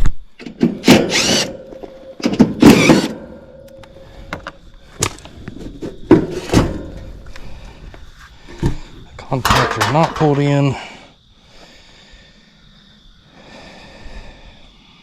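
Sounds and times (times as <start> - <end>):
metal clunk: 0.4 - 7.2, 9.4 - 10.4
sheet metal panel scraping: 5.7 - 7.1.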